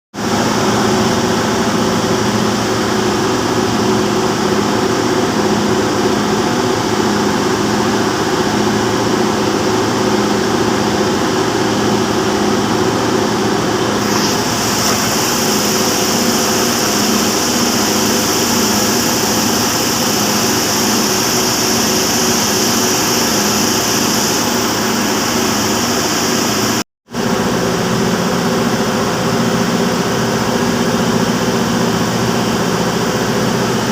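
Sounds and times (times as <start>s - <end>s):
gas compressor engine droning: 0.2s - 33.9s
high hiss: 14.0s - 26.8s.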